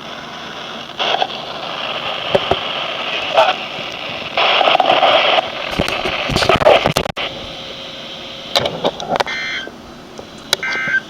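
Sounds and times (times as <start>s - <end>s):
radio hiss with crackling: 0.0s - 11.0s
warbling data tones: 9.2s - 9.8s, 10.5s - 11.0s.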